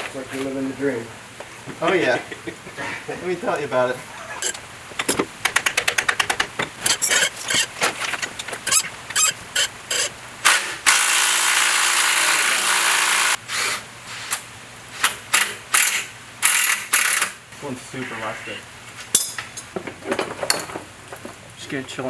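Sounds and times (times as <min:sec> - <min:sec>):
knocks: 0:04.4 - 0:10.1
ratchet wrench clicking: 0:04.4 - 0:10.1.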